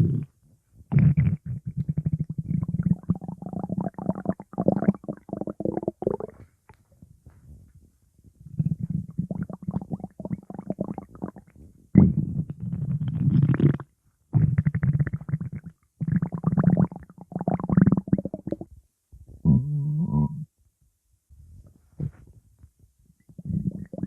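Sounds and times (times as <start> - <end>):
stomach growling: 0.0 - 6.8, 8.4 - 18.7, 19.4 - 20.5, 23.2 - 24.0.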